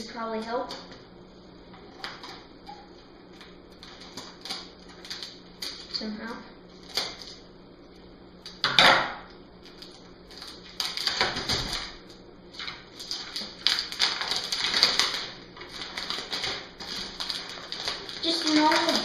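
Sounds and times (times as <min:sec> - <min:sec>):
plastic packaging crinkling: 0:09.6 - 0:19.0.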